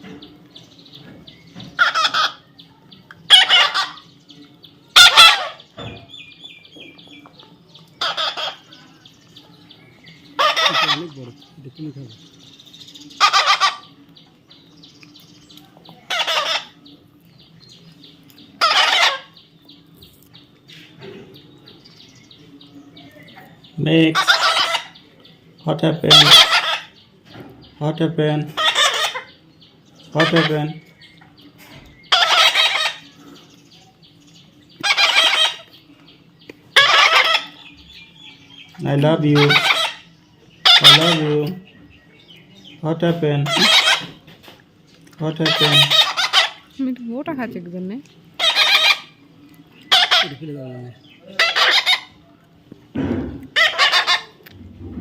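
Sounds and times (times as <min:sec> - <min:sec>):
parrot squawking: 0:01.8 - 0:02.5, 0:03.3 - 0:04.1, 0:04.9 - 0:05.7, 0:08.0 - 0:08.8, 0:10.4 - 0:11.3, 0:13.2 - 0:14.0, 0:16.1 - 0:16.8, 0:18.6 - 0:19.4, 0:24.1 - 0:25.0, 0:26.0 - 0:27.0, 0:28.5 - 0:29.4, 0:30.1 - 0:30.9, 0:32.1 - 0:33.1, 0:34.8 - 0:35.8, 0:36.7 - 0:41.6, 0:43.4 - 0:44.2, 0:45.3 - 0:46.8, 0:48.3 - 0:49.2, 0:49.8 - 0:52.3, 0:53.5 - 0:54.4.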